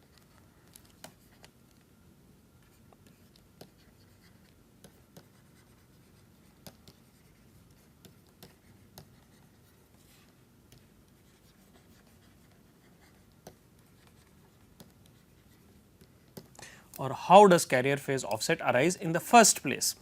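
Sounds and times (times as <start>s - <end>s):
quiet room hum: 0.0s - 20.0s
pen scratching on paper: 2.6s - 16.3s
pen tapping: 3.0s - 9.6s, 12.9s - 15.3s.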